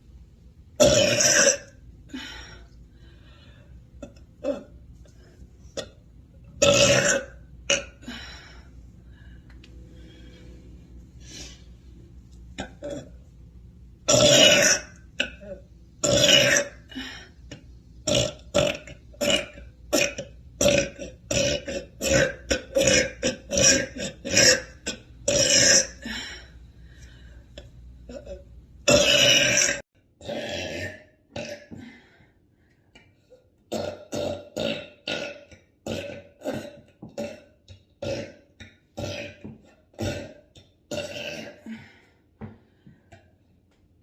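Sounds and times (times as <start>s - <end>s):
woman burping: 0.8s - 1.8s, 4.0s - 4.8s, 6.6s - 8.2s, 12.6s - 13.2s, 14.1s - 26.2s, 28.1s - 31.9s, 33.7s - 41.8s.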